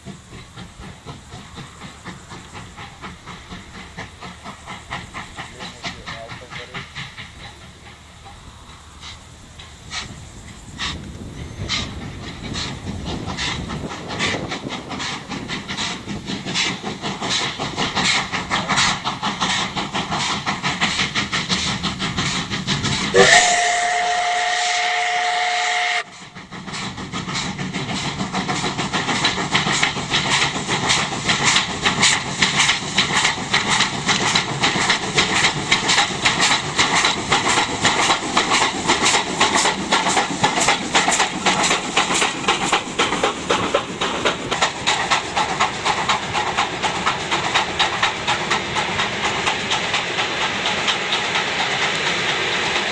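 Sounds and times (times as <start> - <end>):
steam locomotive chuffing: 0.0 - 52.9
steam whistle: 23.1 - 26.2.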